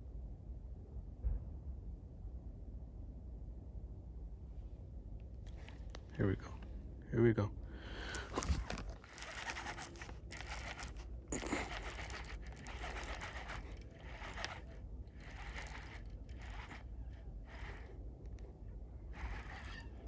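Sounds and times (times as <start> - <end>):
scraping and rustling handling noise: 7.8 - 17.9, 19.2 - 20.0.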